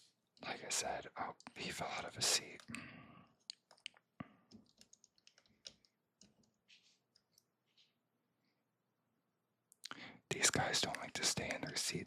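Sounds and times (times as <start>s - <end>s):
soft rustles: 6.6s - 8.0s.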